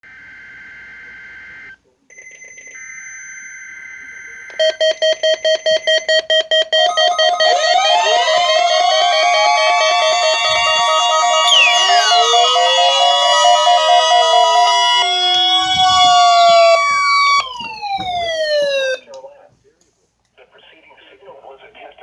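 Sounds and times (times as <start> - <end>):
rapid electronic beeping: 4.6 - 19.0
sliding electronic tones: 6.6 - 19.0
warbling alarm tone: 6.7 - 19.0.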